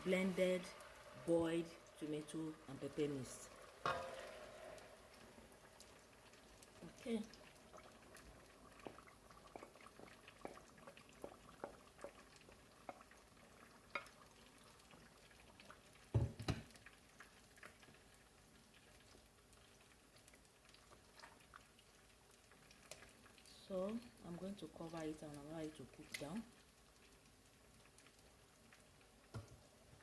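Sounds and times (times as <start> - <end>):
stew bubbling in a pot: 0.0 - 30.0
knocks on a pot: 16.1 - 16.7.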